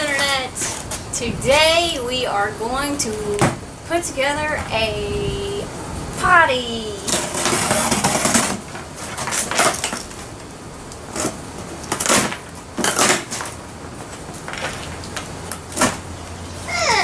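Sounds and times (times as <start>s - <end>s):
cardboard scraping rustle: 0.2s - 1.1s, 7.1s - 10.4s.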